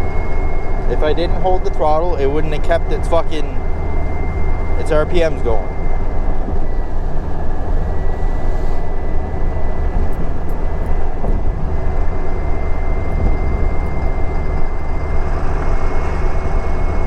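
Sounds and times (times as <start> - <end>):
diesel engine running: 0.0 - 17.0
turbocharger whistle: 0.0 - 17.0.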